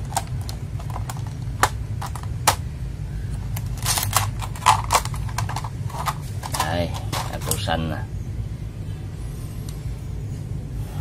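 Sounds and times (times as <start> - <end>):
low steady hum: 0.0 - 11.0.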